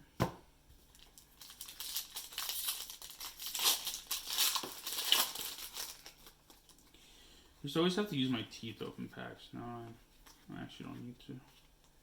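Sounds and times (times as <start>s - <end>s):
foil wrapper crinkling and tearing: 0.9s - 6.8s.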